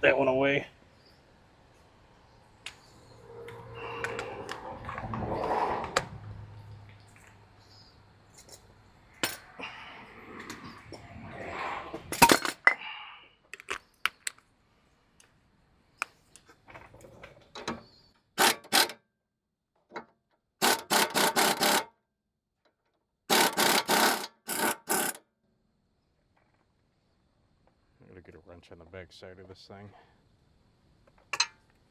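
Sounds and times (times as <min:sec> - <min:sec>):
tools clacking and clinking: 0:12.2 - 0:12.8, 0:18.4 - 0:19.0, 0:20.6 - 0:21.8, 0:23.3 - 0:25.2
impact wrench bursts: 0:18.4 - 0:19.0, 0:20.6 - 0:21.8, 0:23.3 - 0:25.2.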